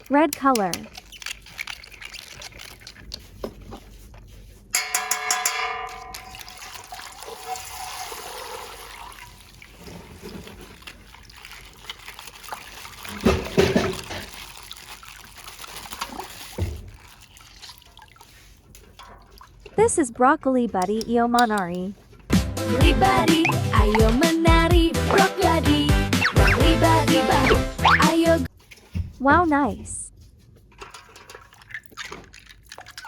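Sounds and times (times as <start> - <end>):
water trickling from plastic bag: 0.0 - 4.0, 6.1 - 19.8, 30.8 - 33.0
plastic being handled: 0.0 - 4.6, 9.4 - 18.4.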